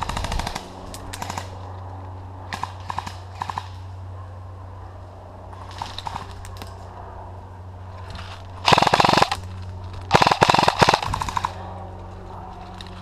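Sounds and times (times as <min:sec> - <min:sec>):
airsoft rifle firing bursts: 0:00.0 - 0:01.5, 0:02.5 - 0:03.8, 0:08.6 - 0:09.4, 0:10.1 - 0:11.6.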